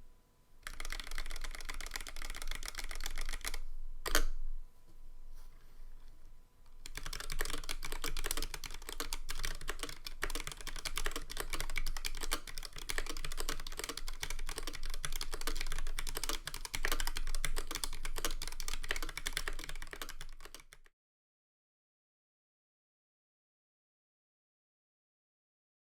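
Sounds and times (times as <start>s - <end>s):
mechanical keyboard typing: 0.6s - 4.3s, 6.7s - 20.9s.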